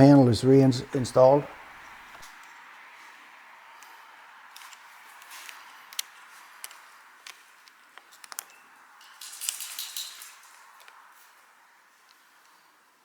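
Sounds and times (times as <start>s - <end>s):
scraping rustle: 7.4s - 11.6s
small metal parts clicking: 8.1s - 11.0s.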